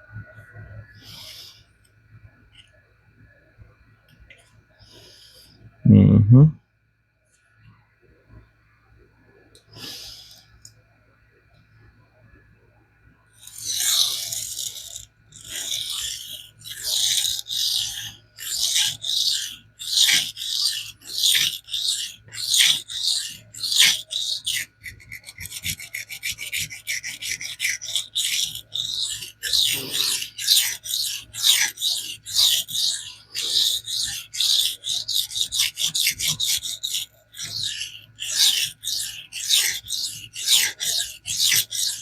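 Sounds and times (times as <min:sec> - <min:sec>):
knife scraping on abrasive film: 0:13.4 - 0:42.0.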